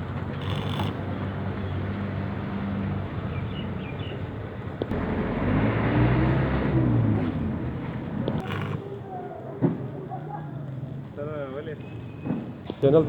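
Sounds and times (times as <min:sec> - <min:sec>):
engine running and revving: 0:04.9 - 0:08.8.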